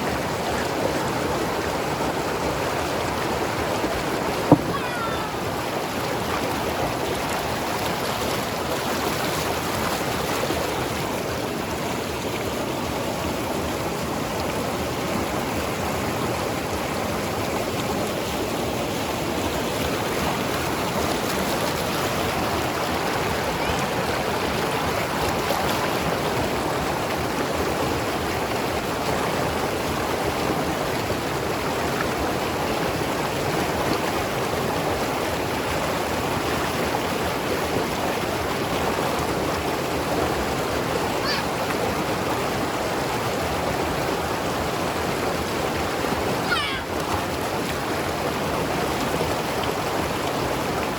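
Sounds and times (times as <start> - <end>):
river water rushing over rocks: 0.0 - 50.9.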